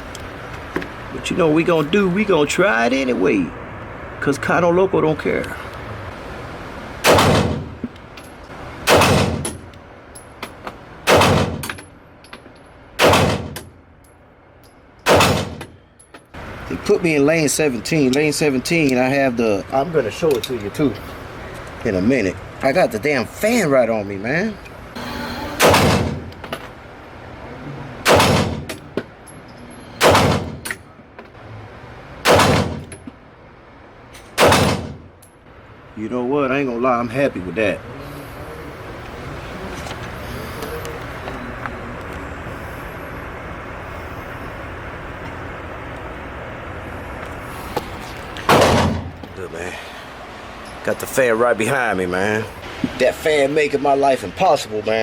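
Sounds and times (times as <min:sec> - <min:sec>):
pistol shots with ringing: 0:07.0 - 0:07.8, 0:08.9 - 0:09.6, 0:11.1 - 0:11.8, 0:13.0 - 0:13.6, 0:15.0 - 0:15.8, 0:25.6 - 0:26.3, 0:28.0 - 0:28.8, 0:30.0 - 0:30.7, 0:32.2 - 0:32.9, 0:34.4 - 0:35.1.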